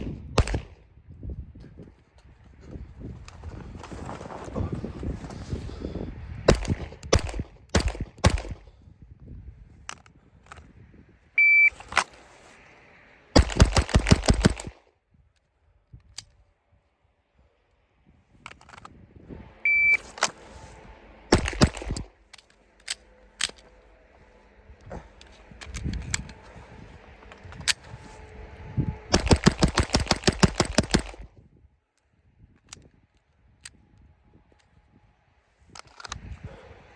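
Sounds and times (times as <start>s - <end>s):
rifle gunshots: 0.0s - 0.7s, 6.5s - 8.7s, 13.4s - 14.8s, 21.3s - 22.1s, 29.1s - 31.2s
short high beep: 19.7s - 20.0s.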